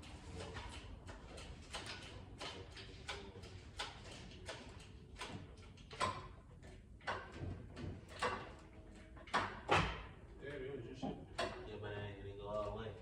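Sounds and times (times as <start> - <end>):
irregular clicks and knocks: 0.0 - 10.2, 11.0 - 11.7.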